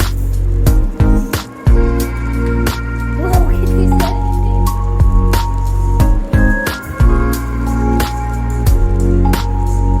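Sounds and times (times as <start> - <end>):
background music with sustained chords: 0.0 - 10.0.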